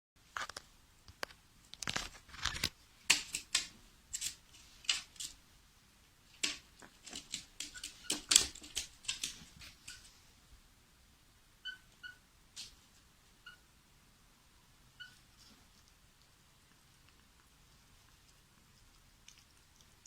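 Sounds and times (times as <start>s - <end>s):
parrot beak crunching: 15.4s - 20.0s.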